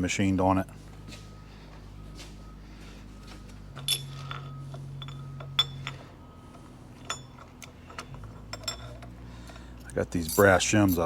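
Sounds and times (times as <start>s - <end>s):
metal tools clinking: 3.8s - 6.0s, 8.5s - 9.1s, 9.9s - 11.0s.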